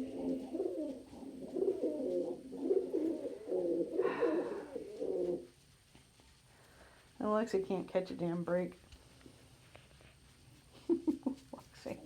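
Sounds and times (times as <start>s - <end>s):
pigeons cooing: 0.0s - 5.5s.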